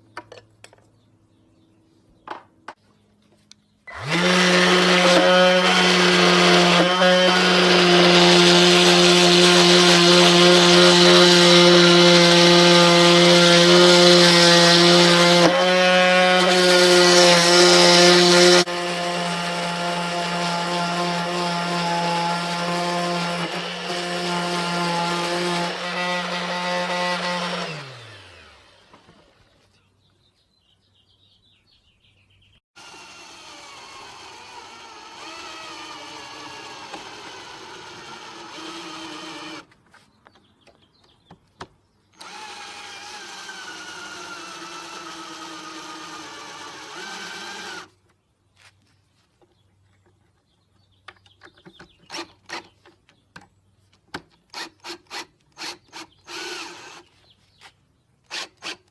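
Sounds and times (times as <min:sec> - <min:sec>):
electric power drill running: 0:03.9 - 0:29.6, 0:32.8 - 0:39.7, 0:42.2 - 0:47.9, 0:55.6 - 0:57.1.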